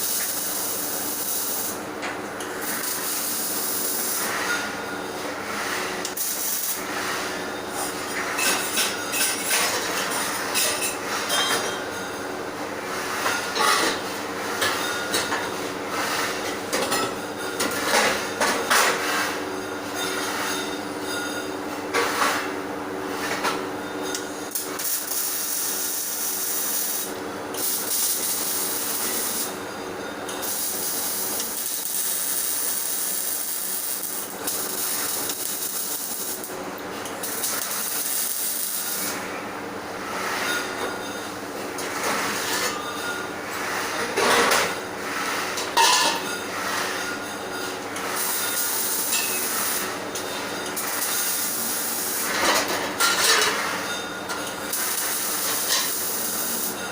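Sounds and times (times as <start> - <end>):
welding arc crackling and hissing: 0.0 - 1.9, 2.5 - 4.8, 5.8 - 7.9, 24.2 - 29.6, 30.3 - 39.3, 48.0 - 50.1, 50.7 - 52.7, 54.5 - 56.9.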